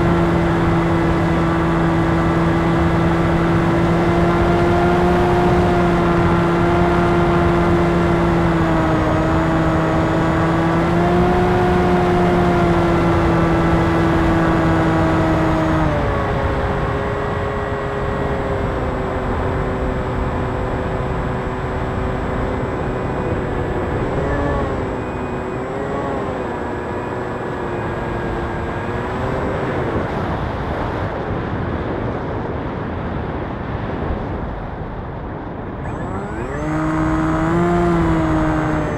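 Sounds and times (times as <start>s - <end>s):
electric motor and propeller whine: 0.0s - 31.2s, 35.6s - 38.9s.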